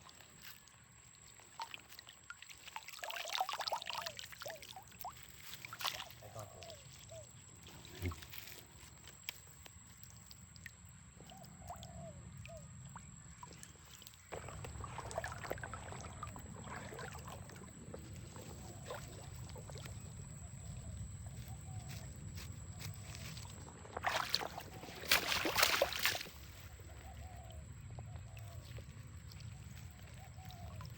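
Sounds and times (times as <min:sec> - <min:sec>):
small splashes and knocks: 0:00.0 - 0:11.9, 0:12.5 - 0:20.3, 0:22.4 - 0:27.0
river water sloshing and trickling: 0:00.0 - 0:30.9.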